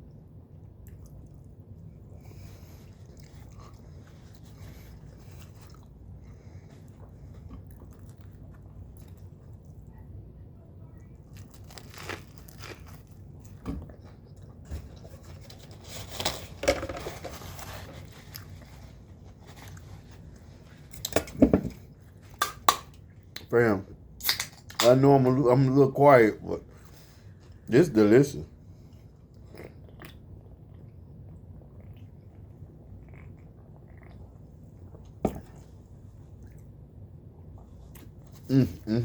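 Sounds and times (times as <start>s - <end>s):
person chewing crunchy sandwich: 0.6s - 9.8s, 11.2s - 16.6s, 17.2s - 21.2s, 29.0s - 35.8s.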